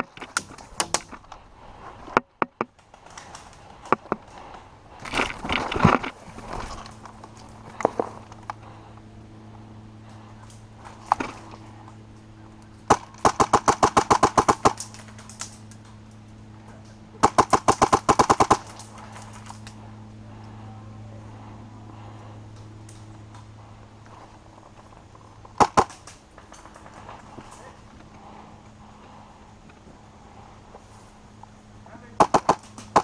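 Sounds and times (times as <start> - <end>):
airsoft rifle firing: 12.9 - 15.0, 17.2 - 18.8, 25.6 - 26.2, 32.2 - 33.0.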